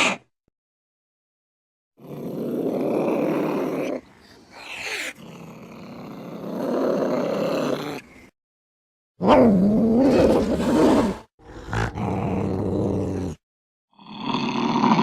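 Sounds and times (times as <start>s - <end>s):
cat growling: 2.0s - 8.3s, 9.2s - 13.4s.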